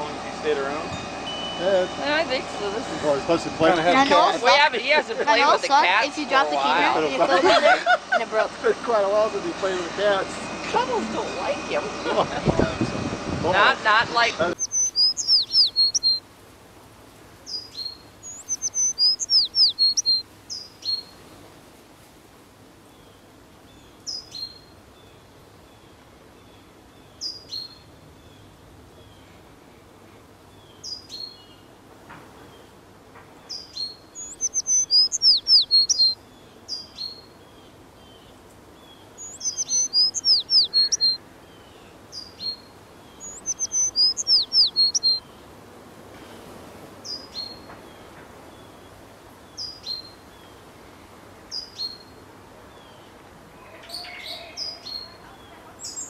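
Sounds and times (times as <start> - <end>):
small birds chirping: 13.6 - 16.3, 17.4 - 21.4, 22.8 - 29.3, 30.4 - 31.7, 32.4 - 45.6, 47.0 - 50.7, 51.5 - 56.0
falling whistled bird notes: 14.6 - 16.2, 18.3 - 20.2, 34.2 - 36.2, 39.2 - 41.2, 43.2 - 45.2.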